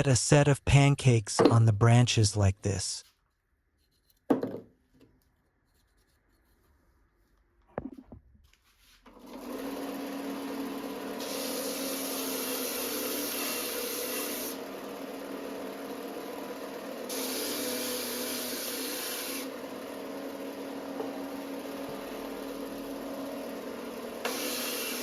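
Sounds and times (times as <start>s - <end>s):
power tool running on wood: 9.2s - 25.0s.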